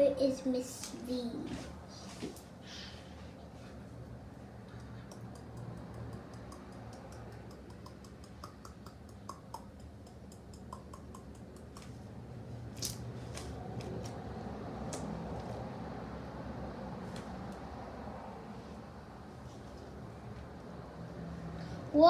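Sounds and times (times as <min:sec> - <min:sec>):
sharp snaps: 0:04.7 - 0:12.1.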